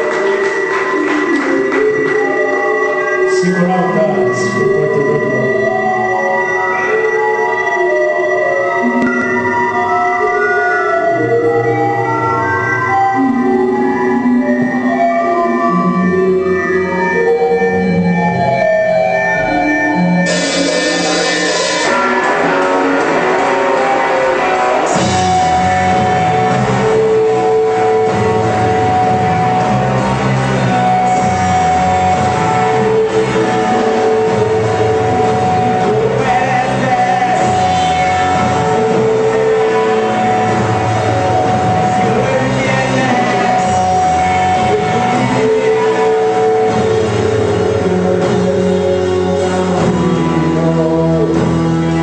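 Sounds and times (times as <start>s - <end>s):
noisy high sound: 19.2s - 46.0s
rock band playing: 20.0s - 52.0s.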